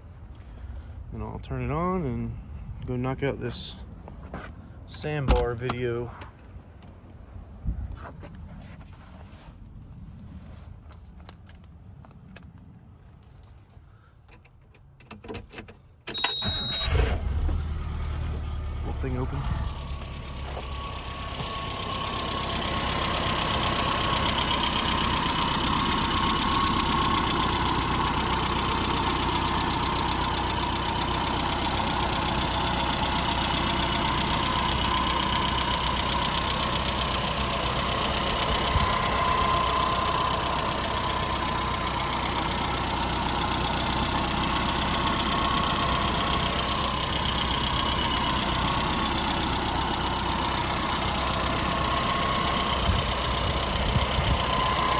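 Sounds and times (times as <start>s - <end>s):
car engine idling: 16.2s - 54.9s
steady whine: 17.0s - 54.9s.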